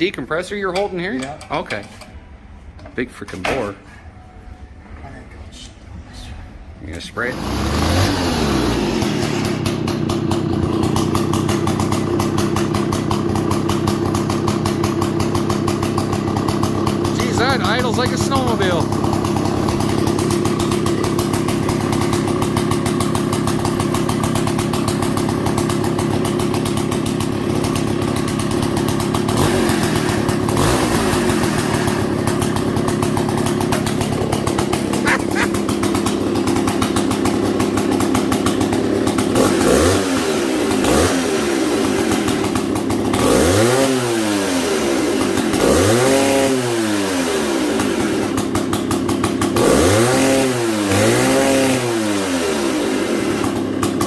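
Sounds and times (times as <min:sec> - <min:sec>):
chainsaw engine idling and revving: 0:07.2 - 0:54.0.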